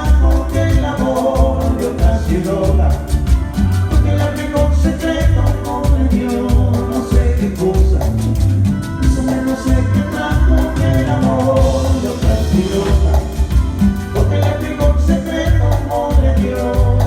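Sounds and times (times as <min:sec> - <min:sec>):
latin dance music with singing: 0:00.0 - 0:17.0.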